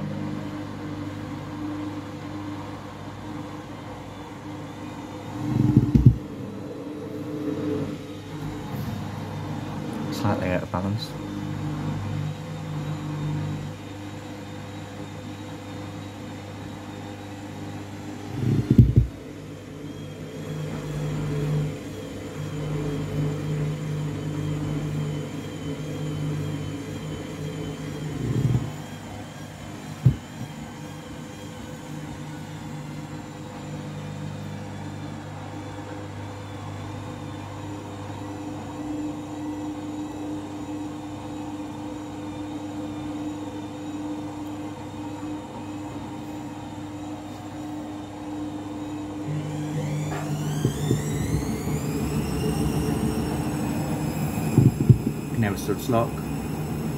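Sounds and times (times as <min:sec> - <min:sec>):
washing machine drum humming: 0:00.0 - 0:56.9
heavy thumps: 0:05.6 - 0:06.3, 0:18.5 - 0:19.2.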